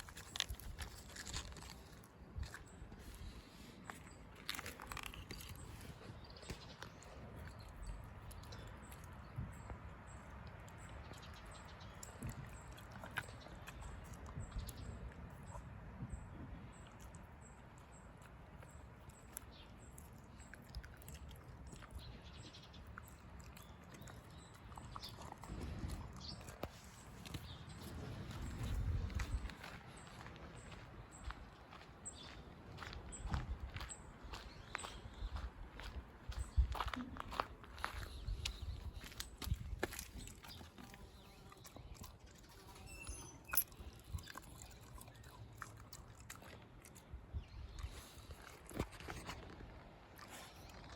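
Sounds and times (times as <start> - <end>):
dog chewing: 0.0 - 9.2, 17.0 - 29.9, 39.5 - 47.1.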